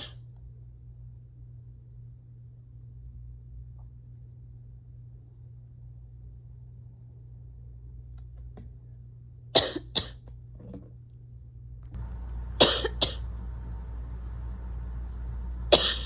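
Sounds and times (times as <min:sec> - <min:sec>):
background hum: 0:00.0 - 0:16.0
person coughing: 0:09.6 - 0:10.2, 0:12.6 - 0:13.2, 0:15.7 - 0:16.0.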